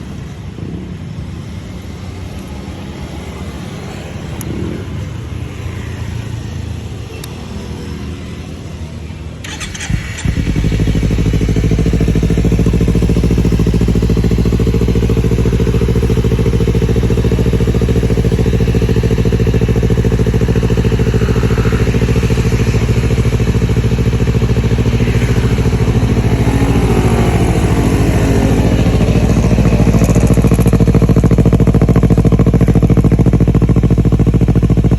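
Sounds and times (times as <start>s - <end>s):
motorcycle engine starting and idling: 3.6s - 34.9s
quiet engine sound: 9.4s - 34.9s.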